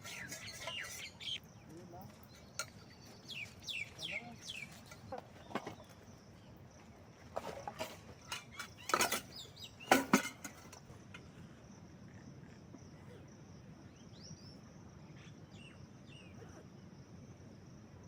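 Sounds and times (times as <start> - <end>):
bird chirps: 0.0 - 6.0
insects trilling: 0.0 - 18.0
knocks and clatters: 7.4 - 10.9.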